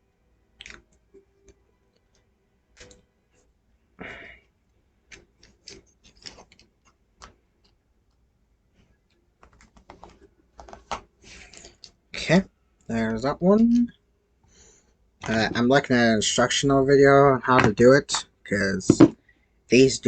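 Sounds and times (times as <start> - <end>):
plastic parts clicking and scraping: 5.1 - 7.8, 9.4 - 12.0.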